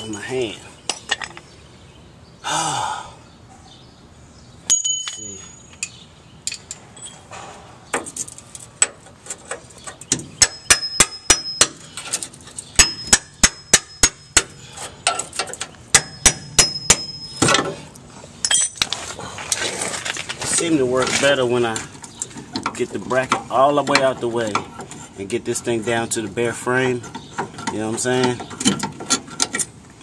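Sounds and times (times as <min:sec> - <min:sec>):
hammer striking steel: 0:12.8 - 0:14.5, 0:15.9 - 0:17.5.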